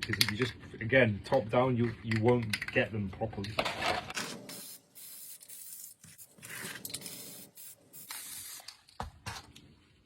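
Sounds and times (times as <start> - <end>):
spray paint can hissing: 4.5 - 8.7.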